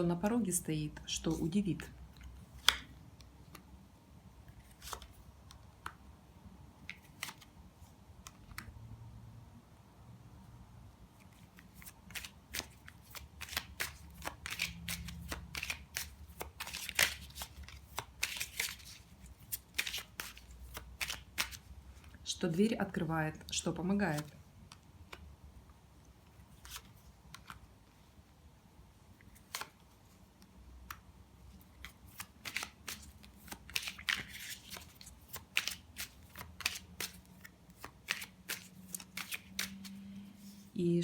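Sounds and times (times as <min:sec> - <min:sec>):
cards shuffling: 0:02.1 - 0:03.7, 0:04.5 - 0:06.1, 0:06.8 - 0:07.6, 0:11.2 - 0:22.2, 0:26.3 - 0:28.0, 0:29.2 - 0:40.7
cards snapping: 0:02.5 - 0:03.7, 0:11.8 - 0:21.6, 0:29.4 - 0:29.8, 0:31.8 - 0:40.0.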